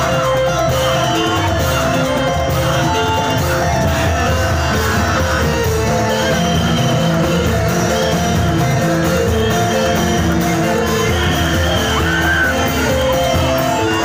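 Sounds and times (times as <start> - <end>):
loud live music with low beat: 0.0 - 14.0
people shouting and whooping: 3.2 - 7.3, 10.4 - 14.0.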